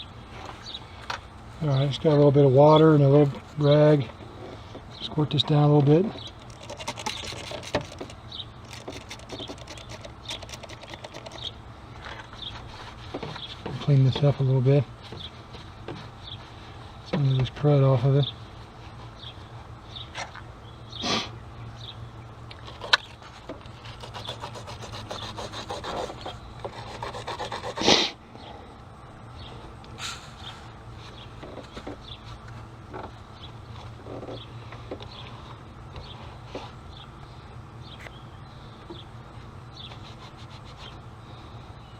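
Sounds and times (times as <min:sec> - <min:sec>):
rag scrubbing metal terminal: 0:05.3 - 0:11.5
small clicks and patter: 0:06.3 - 0:12.5.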